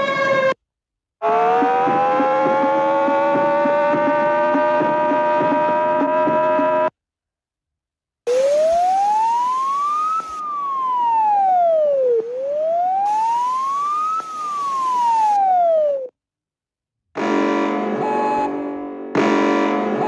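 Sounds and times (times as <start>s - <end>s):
emergency siren wailing: 0.0s - 0.6s, 1.2s - 6.9s, 8.3s - 16.1s
hiss: 8.3s - 10.4s, 13.0s - 15.3s.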